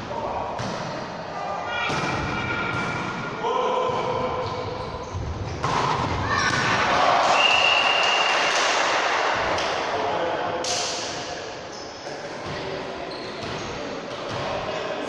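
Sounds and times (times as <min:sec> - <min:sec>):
ball thudding on court: 0:05.6 - 0:06.7.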